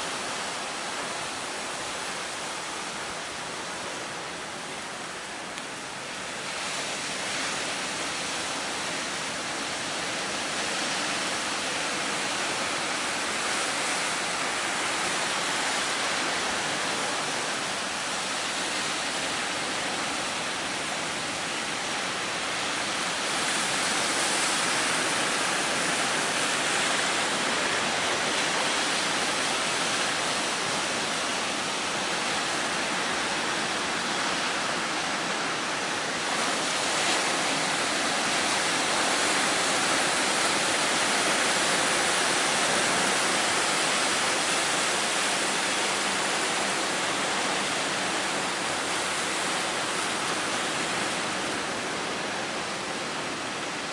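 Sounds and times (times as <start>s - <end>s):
heavy sea surf: 0.0s - 53.9s.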